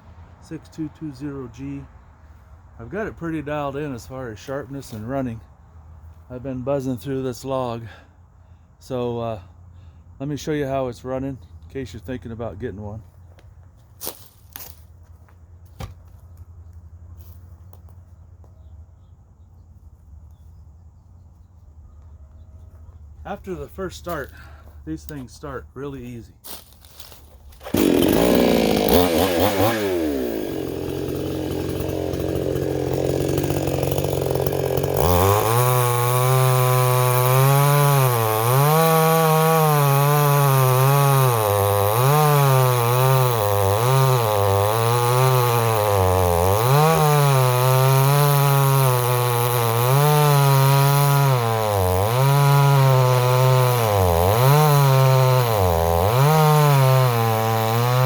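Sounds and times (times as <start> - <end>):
chainsaw cutting log: 0.4 - 1.9, 14.0 - 18.0, 26.5 - 58.0.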